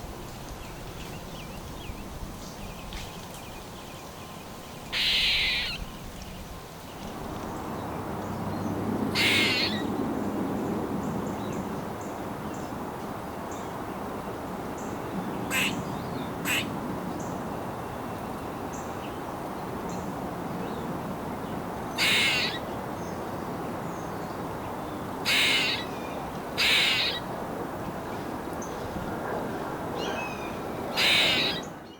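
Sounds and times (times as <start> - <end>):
squirrel squeaky calls: 4.9 - 5.9, 9.2 - 9.9, 15.5 - 15.8, 16.4 - 16.7, 22.0 - 22.6, 25.2 - 26.0, 26.6 - 27.2, 30.0 - 31.7.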